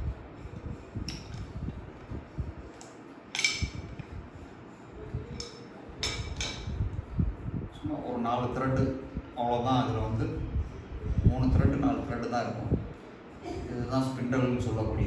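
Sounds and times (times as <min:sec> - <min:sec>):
metal clinks: 0:03.3 - 0:04.1.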